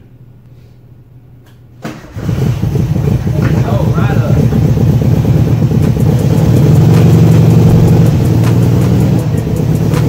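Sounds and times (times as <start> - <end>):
car engine running: 2.4 - 10.0.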